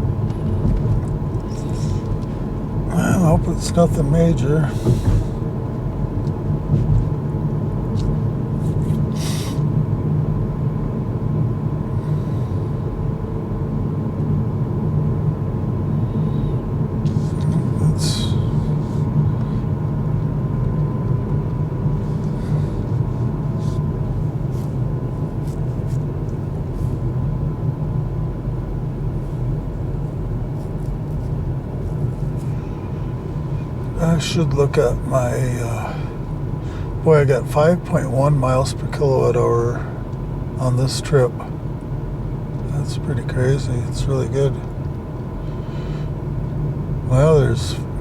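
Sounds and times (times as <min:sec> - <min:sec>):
faint steady whine: 0:00.0 - 0:48.0
tyres rumbling on road: 0:00.0 - 0:48.0
short hisses: 0:09.1 - 0:09.7.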